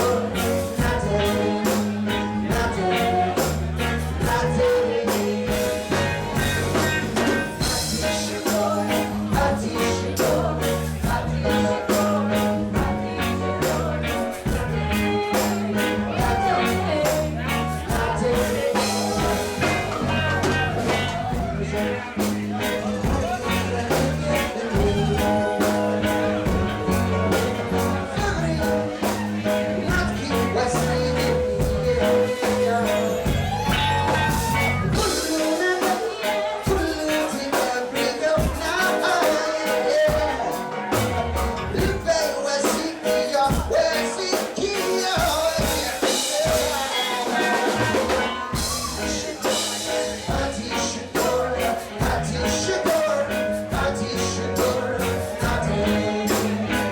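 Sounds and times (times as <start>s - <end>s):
heavy bass line: 0.0s - 35.4s, 47.7s - 56.9s
drums: 0.0s - 56.9s
live reggae band: 0.0s - 56.9s.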